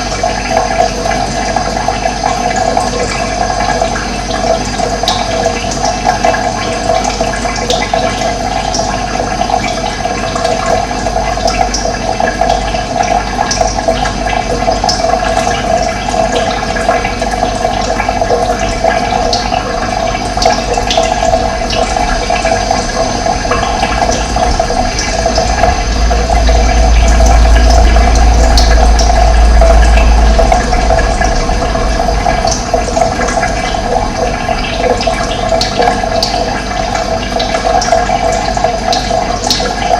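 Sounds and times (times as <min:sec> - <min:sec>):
running water rushing: 0:00.0 - 0:39.9
deep low rumble: 0:18.6 - 0:37.5.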